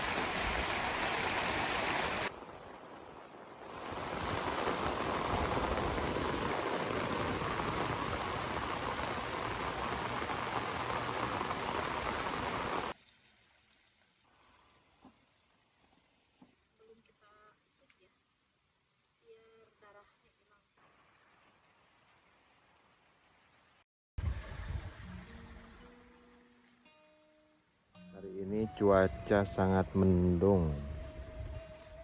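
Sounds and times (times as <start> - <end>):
heavy rain pouring: 0.0 - 13.0.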